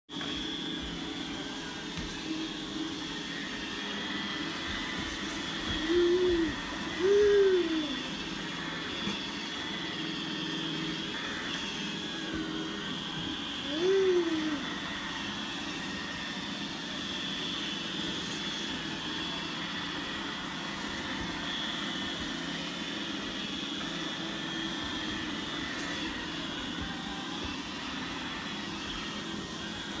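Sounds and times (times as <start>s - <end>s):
robot vacuum motor whine: 0.1s - 30.0s
rising and falling voice sounds: 5.9s - 8.1s, 13.7s - 14.7s.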